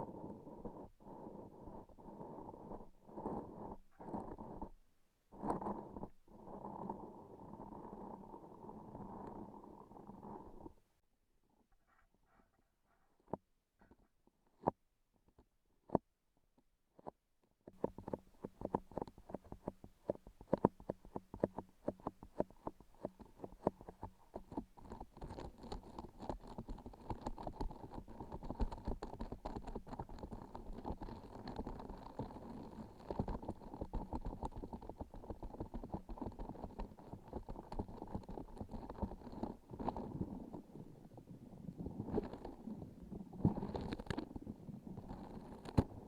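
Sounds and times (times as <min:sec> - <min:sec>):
sticky texture clicking and crackling: 0:17.0 - 0:40.7, 0:42.0 - 0:46.0.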